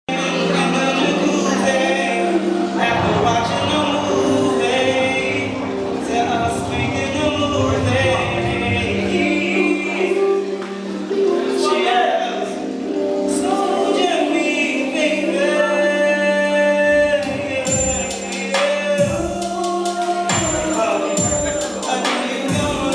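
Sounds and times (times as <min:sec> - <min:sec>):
backing track with low held note: 0:00.1 - 0:18.4
singers singing slow jam: 0:00.1 - 0:22.9.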